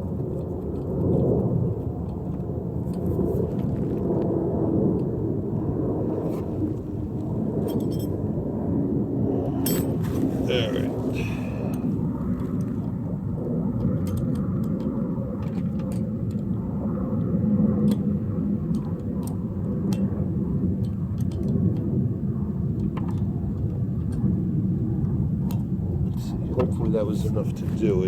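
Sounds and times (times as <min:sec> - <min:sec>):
low rumble: 0:01.0 - 0:13.8.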